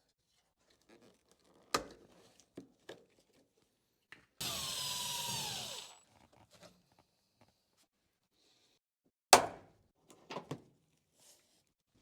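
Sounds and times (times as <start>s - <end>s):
power drill motor whining: 4.4s - 6.0s.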